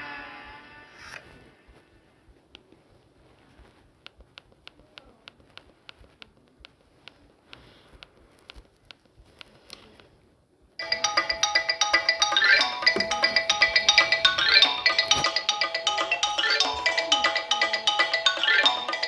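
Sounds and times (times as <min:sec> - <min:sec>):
phone ringtone melody: 0:10.8 - 0:19.0.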